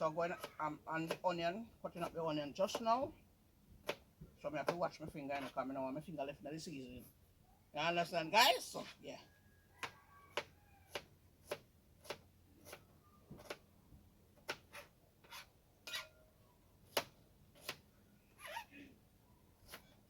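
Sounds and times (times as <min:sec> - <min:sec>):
knife chopping on cutting board: 0:09.8 - 0:12.8, 0:16.9 - 0:17.8.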